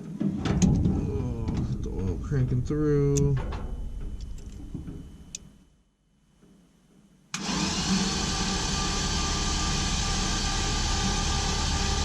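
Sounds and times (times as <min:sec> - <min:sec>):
engine starter cranking: 0:07.4 - 0:12.0.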